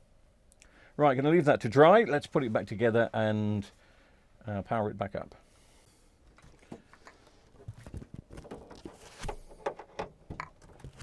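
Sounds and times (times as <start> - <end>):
hands handling tv parts: 6.3 - 11.0.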